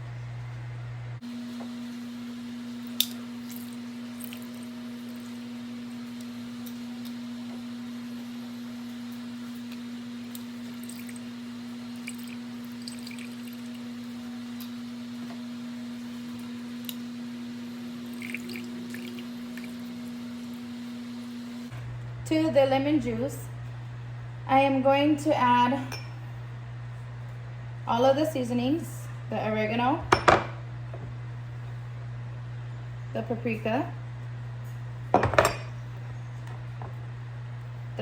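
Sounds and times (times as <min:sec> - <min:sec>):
steady low hum: 0:00.0 - 0:38.0
juice dripping into bowl: 0:02.8 - 0:07.2, 0:09.5 - 0:14.8, 0:17.7 - 0:20.6.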